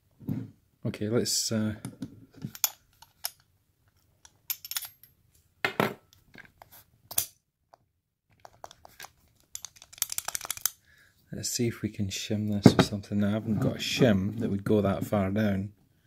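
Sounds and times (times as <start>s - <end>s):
padlock metallic clicks: 9.6s - 10.8s.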